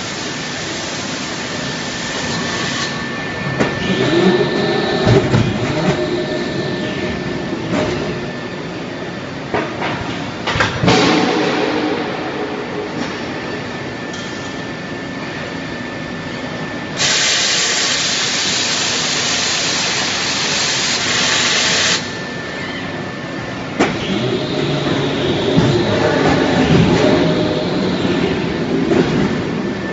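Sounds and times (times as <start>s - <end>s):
forging machinery running: 0.0s - 17.0s, 17.8s - 29.9s
loud spraying hiss: 17.0s - 22.0s.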